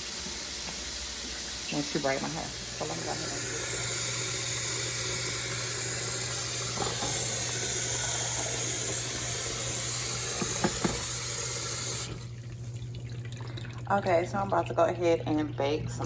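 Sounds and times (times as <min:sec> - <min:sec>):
water running from a tap: 0:00.0 - 0:16.0
small knocks: 0:10.4 - 0:11.1.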